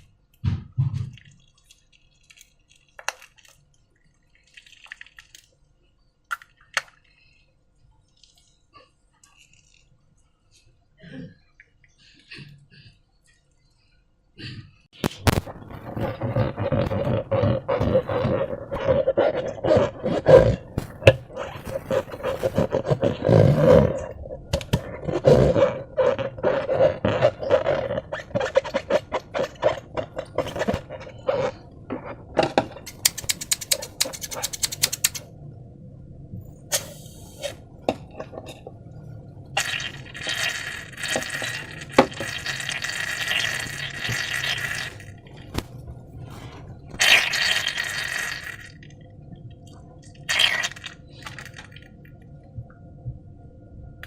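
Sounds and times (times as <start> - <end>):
slime crackle: 15.0 - 31.6
slime squelching: 15.0 - 35.3, 39.6 - 49.0, 50.0 - 52.1
slime hissing: 47.0 - 48.8.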